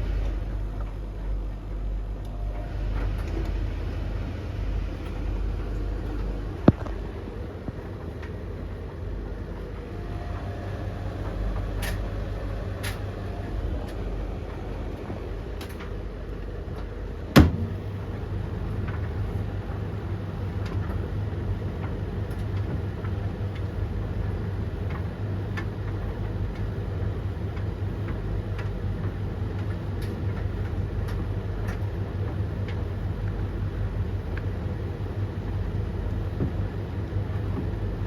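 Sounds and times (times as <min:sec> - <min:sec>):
tumble dryers humming: 0:00.0 - 0:38.0
loud knock: 0:17.4 - 0:17.9.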